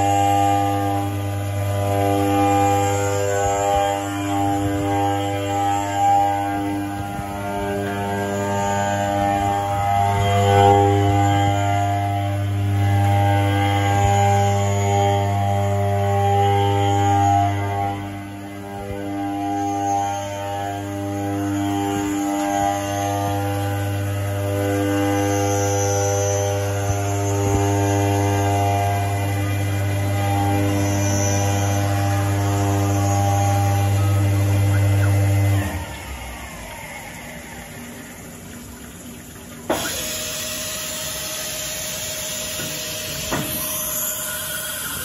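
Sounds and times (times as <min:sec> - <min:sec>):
faint high whine: 0:00.0 - 0:45.0
machine electric hum: 0:00.0 - 0:45.0.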